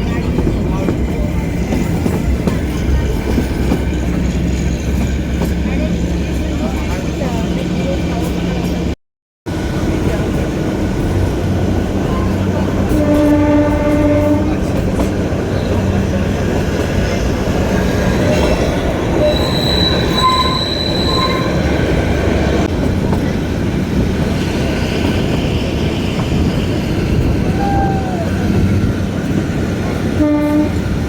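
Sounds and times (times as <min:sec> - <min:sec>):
train wheels rumbling on rail: 0:00.0 - 0:31.0
high wheel squeals: 0:18.1 - 0:21.9.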